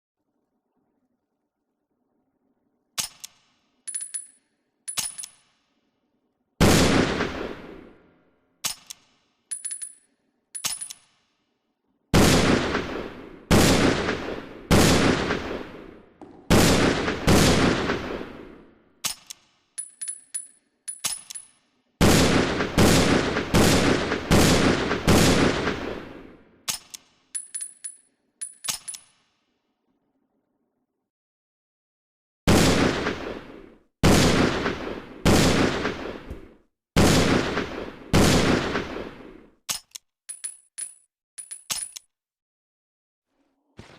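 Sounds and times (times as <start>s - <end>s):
loud gunshot: 6.6s - 7.9s, 12.2s - 15.8s, 16.4s - 18.6s, 22.0s - 26.1s, 32.5s - 39.3s.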